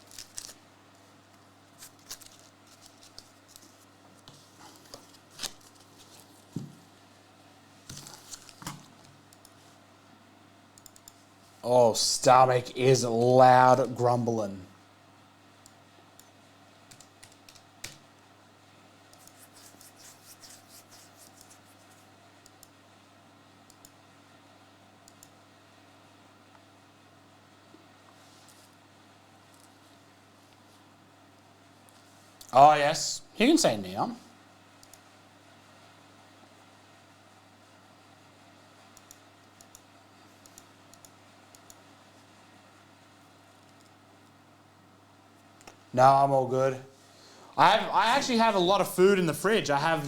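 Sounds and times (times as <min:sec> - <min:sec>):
foil wrapper crinkling: 0:00.0 - 0:00.6, 0:01.8 - 0:03.7, 0:05.2 - 0:06.1.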